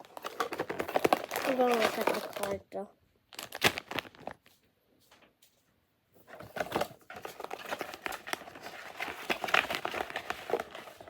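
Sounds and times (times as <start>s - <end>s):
packaging clicks: 0.0s - 2.6s, 6.4s - 11.0s
packaging crinkling and rustling: 0.0s - 4.6s, 6.2s - 11.0s.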